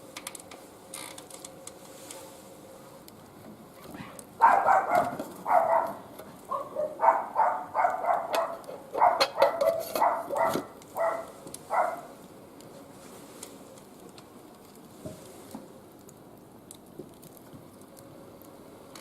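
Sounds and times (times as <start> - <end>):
dog barking: 4.0 - 12.1.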